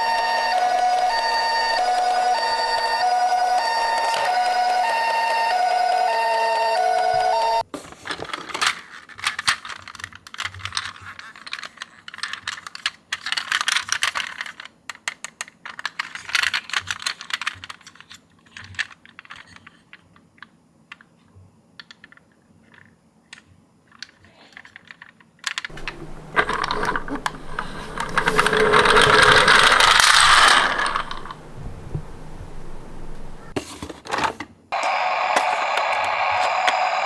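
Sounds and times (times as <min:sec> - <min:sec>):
siren: 0:00.0 - 0:07.6, 0:25.7 - 0:33.6
toy cars clicking and clattering: 0:00.0 - 0:21.2, 0:21.8 - 0:33.5.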